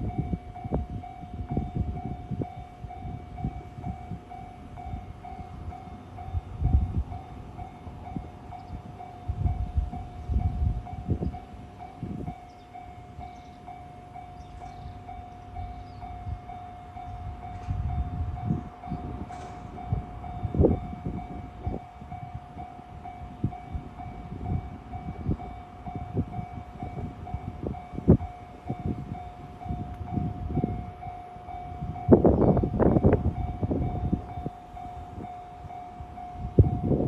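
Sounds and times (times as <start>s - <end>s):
level-crossing warning bell: 0.0s - 37.0s
train wheels knocking on rails: 17.5s - 30.9s.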